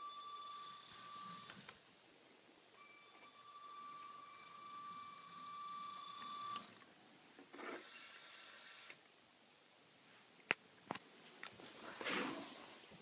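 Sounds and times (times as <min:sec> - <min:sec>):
toy car motor whirring: 0:07.6 - 0:09.0.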